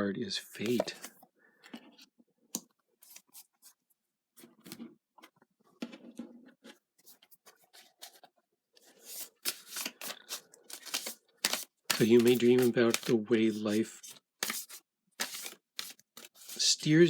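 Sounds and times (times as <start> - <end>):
cards rustling and clicking: 0.6 - 2.0, 7.0 - 17.0.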